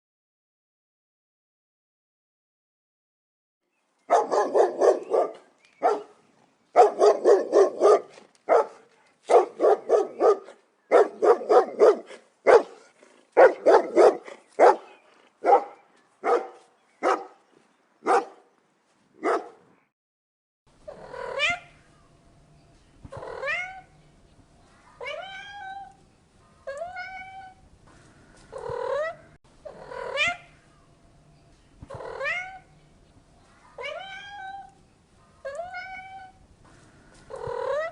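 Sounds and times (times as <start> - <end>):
dog barking: 4.1 - 6.2, 6.8 - 17.4, 18.0 - 18.5, 19.2 - 19.7
cat meowing: 25.0 - 26.0, 26.7 - 27.6, 31.9 - 32.7, 33.8 - 34.8, 35.4 - 36.4.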